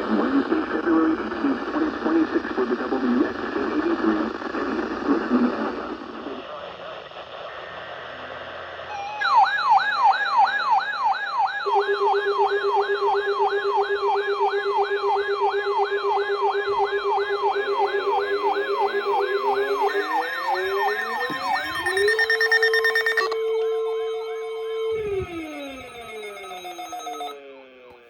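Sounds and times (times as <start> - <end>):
radio hiss: 0.0 - 9.0, 17.7 - 23.4
electronic siren yelp: 8.9 - 28.0
rising pitch glides: 17.6 - 27.9.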